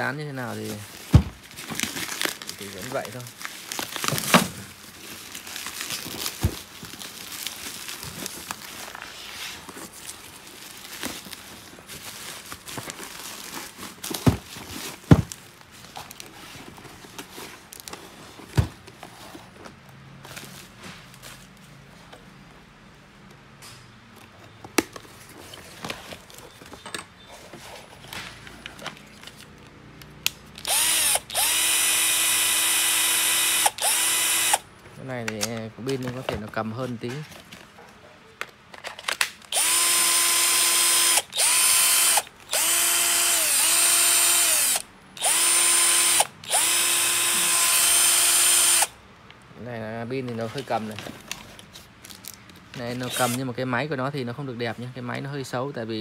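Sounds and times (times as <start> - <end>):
packaging rustling and crinkling: 0.3 - 21.7, 24.8 - 29.8, 35.0 - 37.8
cordless drill motor whining: 30.6 - 34.6, 39.5 - 49.0, 53.0 - 53.4.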